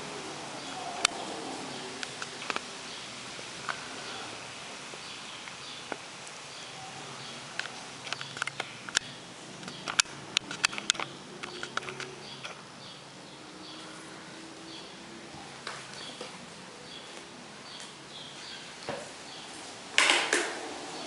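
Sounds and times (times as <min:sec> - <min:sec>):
table fan airy hiss: 0:00.0 - 0:08.0.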